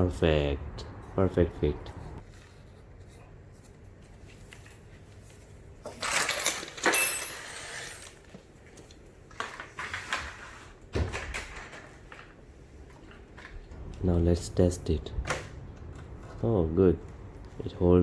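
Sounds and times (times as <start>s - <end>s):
small metal objects clattering: 5.8s - 8.2s.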